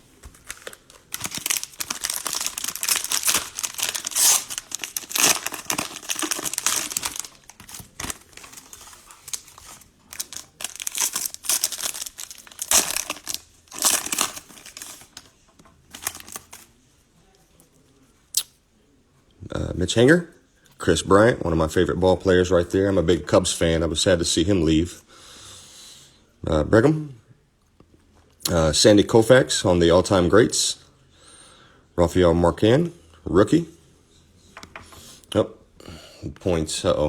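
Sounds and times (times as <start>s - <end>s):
plastic wrapper crinkling and tearing: 0.0s - 16.7s.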